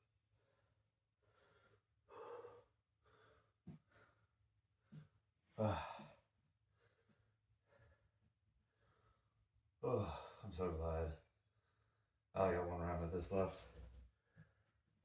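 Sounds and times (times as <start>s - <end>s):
man panting and gasping: 0.4s - 8.0s, 9.8s - 10.4s.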